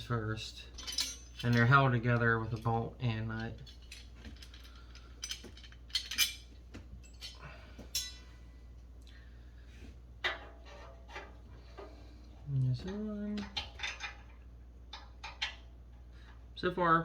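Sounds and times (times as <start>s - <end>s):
metal stove parts clinking: 0.6s - 8.4s, 10.2s - 11.9s, 12.8s - 15.7s.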